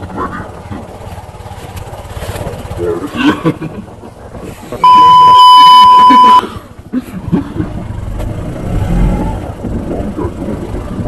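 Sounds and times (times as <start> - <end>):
motorcycle engine rumble: 0.0 - 11.0
censor bleep: 4.8 - 6.4.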